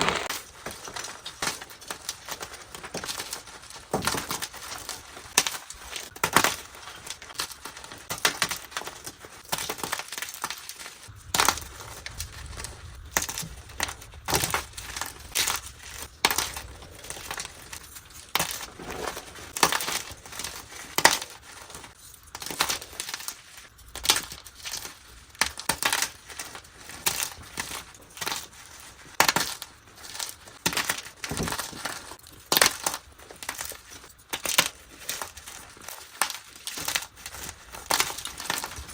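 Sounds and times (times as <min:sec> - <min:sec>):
chalk blocks crunching: 0:00.0 - 0:38.9.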